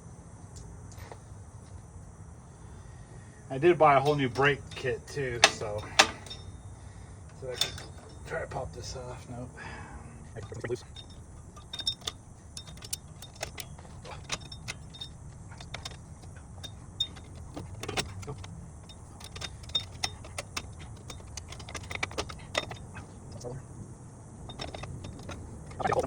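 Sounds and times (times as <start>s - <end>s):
low background rumble: 0.0s - 26.0s
metallic clicks and clinks: 4.0s - 9.3s, 10.4s - 23.6s, 24.5s - 26.0s.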